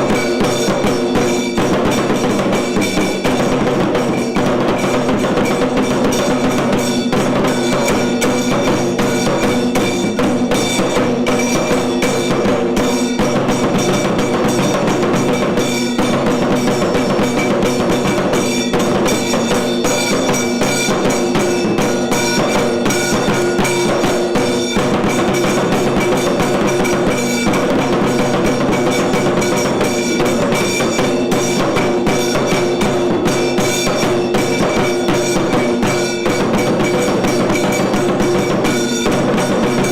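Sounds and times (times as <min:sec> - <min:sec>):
fast drumming and struck percussion: 0:00.0 - 0:39.9
steady held tones: 0:15.4 - 0:35.0.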